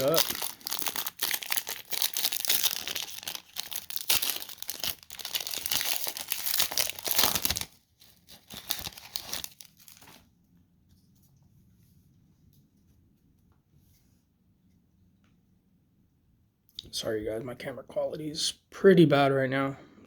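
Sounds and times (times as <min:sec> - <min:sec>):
wrapper tearing and crinkling: 0:00.0 - 0:10.2.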